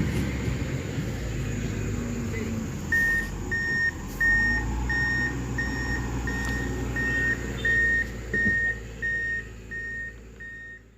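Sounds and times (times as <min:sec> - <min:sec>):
truck engine running: 0:00.0 - 0:10.9
truck reversing alarm beeping: 0:02.9 - 0:10.9.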